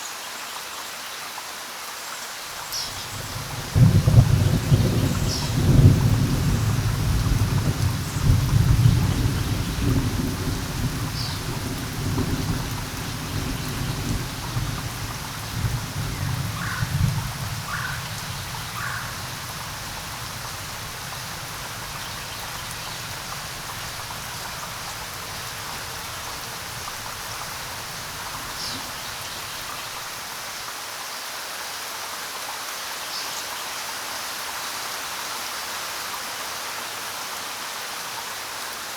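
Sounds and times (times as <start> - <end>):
steady rain falling: 0.0 - 38.9
thunder rumbling: 2.8 - 30.1.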